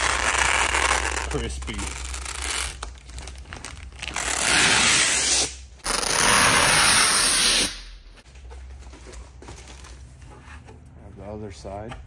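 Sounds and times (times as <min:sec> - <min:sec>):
protective film peeling: 0:00.0 - 0:07.8.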